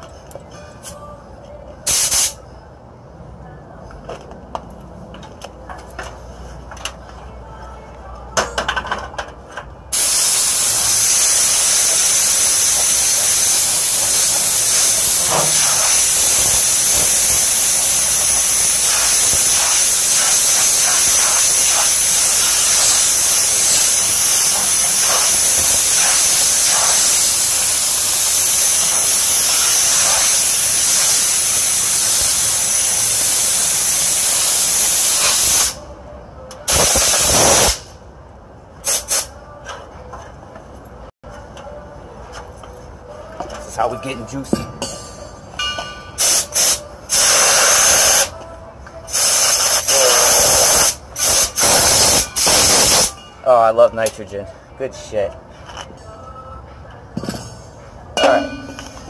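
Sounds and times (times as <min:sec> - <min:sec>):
compressed gas hissing from hose: 0:01.9 - 0:02.4, 0:10.0 - 0:35.8, 0:36.7 - 0:38.0, 0:38.8 - 0:39.3, 0:46.2 - 0:48.3, 0:49.1 - 0:53.1.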